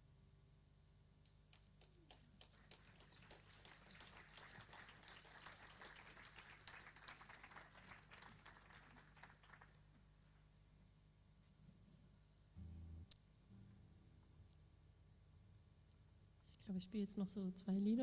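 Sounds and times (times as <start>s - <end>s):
audience applause: 2.2s - 9.8s.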